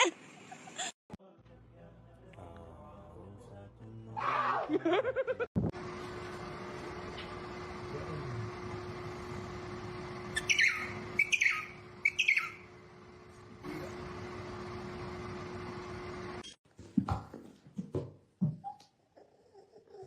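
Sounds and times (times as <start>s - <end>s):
steady hum: 5.6s - 16.5s
small animal high calls: 10.4s - 12.6s.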